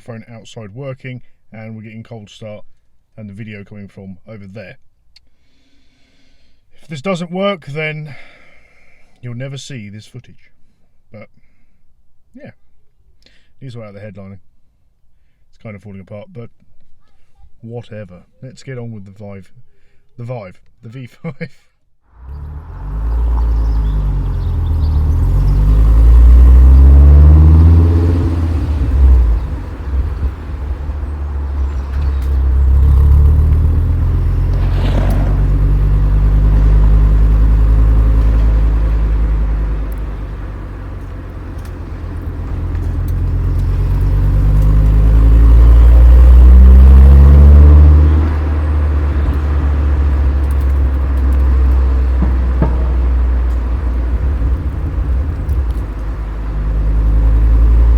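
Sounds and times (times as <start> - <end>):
five-cylinder engine exhaust note: 22.2 - 57.9.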